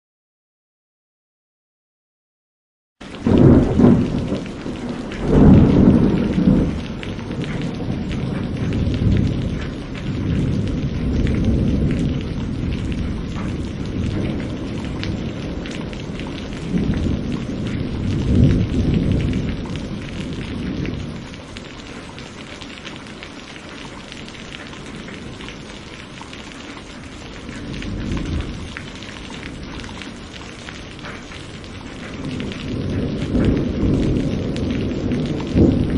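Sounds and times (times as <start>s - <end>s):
rolling thunder: 3.1s - 21.4s, 27.3s - 35.9s
rain hiss: 3.1s - 35.9s.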